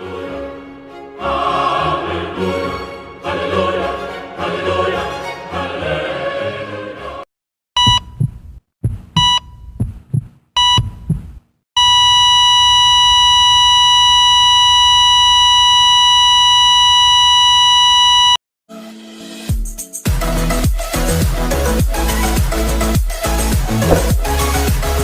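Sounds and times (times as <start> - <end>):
short electronic beeps: 7.8 - 8.3, 9.2 - 9.7, 10.6 - 11.1
low heartbeat thuds: 7.8 - 11.5, 23.8 - 24.3
flatline tone: 11.8 - 18.4.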